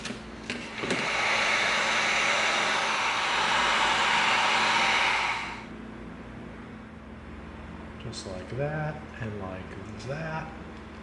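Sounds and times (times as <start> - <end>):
heat gun blowing air: 0.0 - 5.7.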